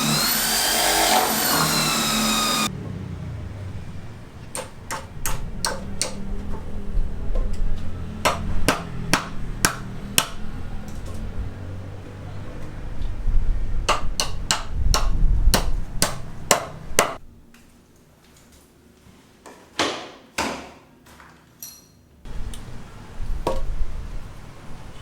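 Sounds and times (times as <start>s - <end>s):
hammer strikes: 4.5s - 6.2s, 8.2s - 10.4s, 13.9s - 17.2s.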